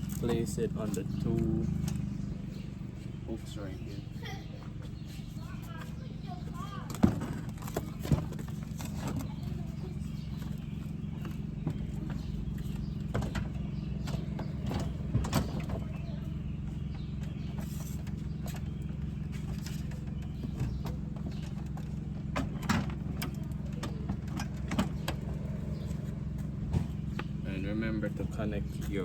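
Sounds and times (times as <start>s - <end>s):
plastic bumper knocks and clicks: 10.2s - 16.1s.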